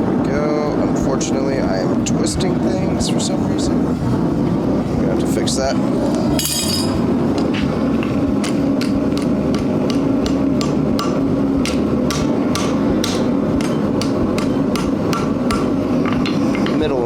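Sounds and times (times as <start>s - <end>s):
low drone: 0.0s - 16.7s
hammer striking steel on anvil: 6.4s - 7.1s, 8.4s - 16.8s
ringing metallic clang: 6.4s - 7.1s.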